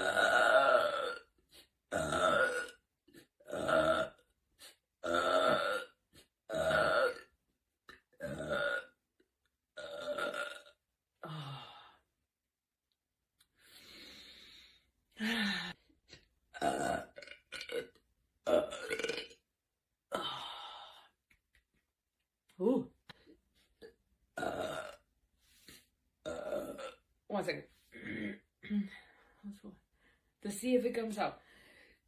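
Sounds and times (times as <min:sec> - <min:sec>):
woman belching: 0:00.0 - 0:01.3, 0:01.9 - 0:02.8, 0:03.4 - 0:04.2, 0:05.0 - 0:07.3, 0:07.9 - 0:09.0, 0:09.8 - 0:11.4, 0:16.5 - 0:19.4, 0:24.3 - 0:25.1, 0:26.2 - 0:27.0.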